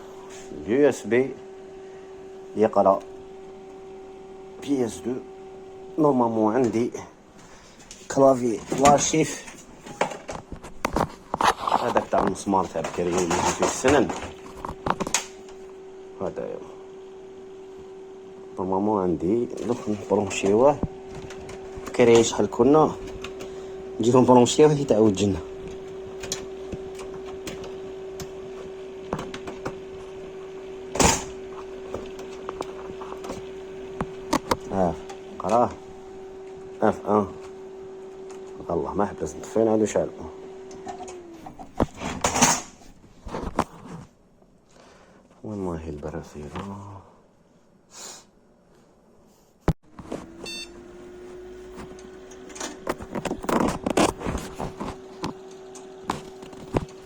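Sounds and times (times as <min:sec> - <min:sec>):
desktop computer humming: 0:00.0 - 0:45.6, 0:49.8 - 0:57.0
hard drive clicking: 0:25.2 - 0:36.7
computer startup beep: 0:50.4 - 0:50.8.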